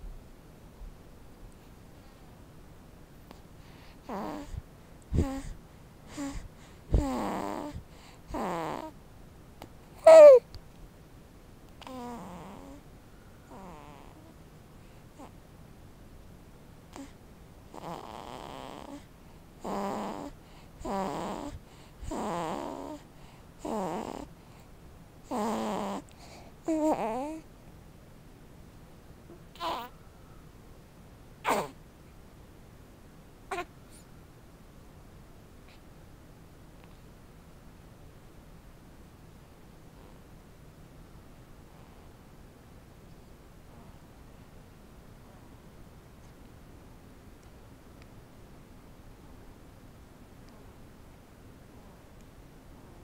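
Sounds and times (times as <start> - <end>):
sleeping baby grunting: 4.0 - 9.0, 10.0 - 10.5, 11.8 - 12.8, 13.5 - 14.3, 16.9 - 23.0, 23.6 - 24.3, 25.2 - 27.4, 29.5 - 30.0, 31.4 - 31.8
baby squeaking and whimpering: 10.0 - 10.4.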